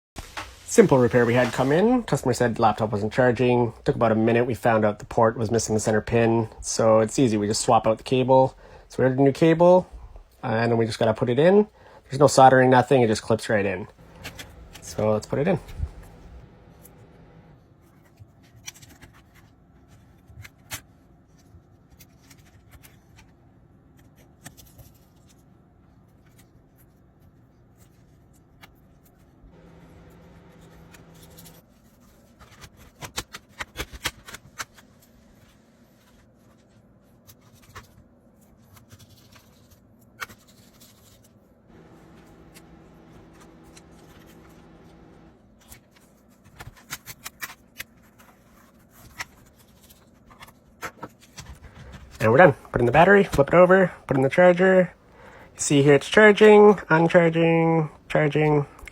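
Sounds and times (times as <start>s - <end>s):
faint steady hum: 13.8s - 18.4s, 25.0s - 32.4s, 41.5s - 45.8s.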